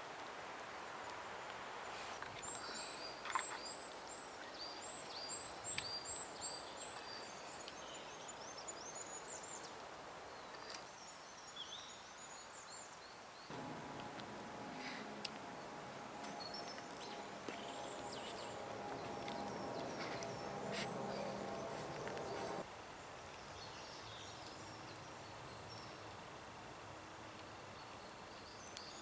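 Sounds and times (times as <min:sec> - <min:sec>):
low steady hum: 0:13.5 - 0:22.6
songbird singing: 0:13.5 - 0:22.6.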